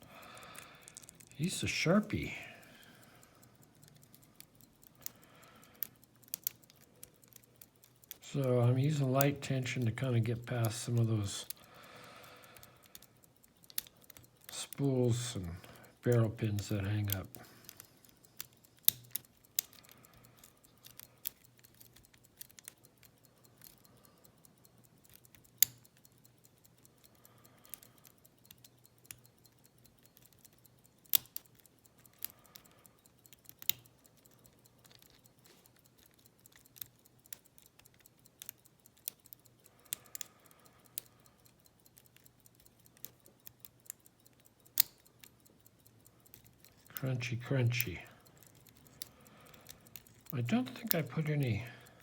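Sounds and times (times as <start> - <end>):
lock pick clicking and scratching: 0.0 - 8.2, 8.8 - 52.0.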